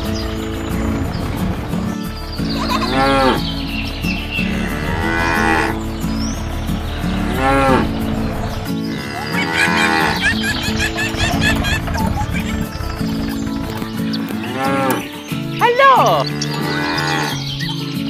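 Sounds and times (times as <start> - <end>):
background music: 0.0 - 18.0
cow mooing: 2.6 - 3.4, 4.4 - 5.8, 7.1 - 13.8, 14.4 - 15.1, 16.2 - 17.4.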